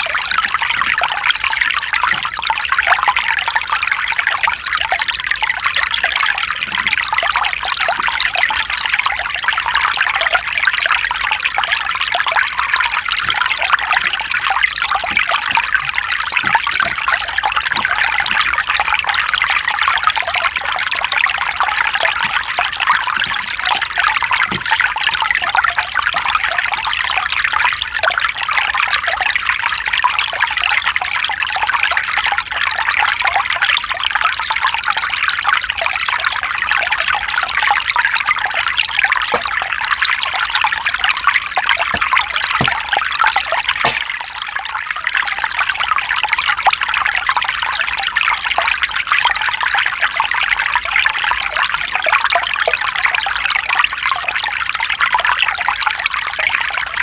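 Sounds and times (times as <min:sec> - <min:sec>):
water running over rocks: 0:00.0 - 0:27.8, 0:36.8 - 0:44.5.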